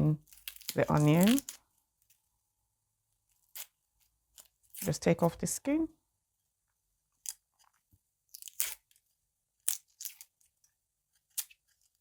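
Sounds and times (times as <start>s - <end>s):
onion skin crackling: 0.2s - 2.2s, 3.2s - 5.1s, 8.2s - 12.0s.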